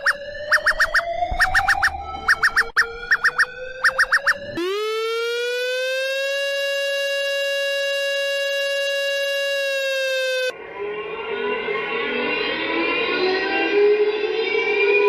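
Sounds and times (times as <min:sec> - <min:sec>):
alarm siren winding up: 0:00.0 - 0:10.6.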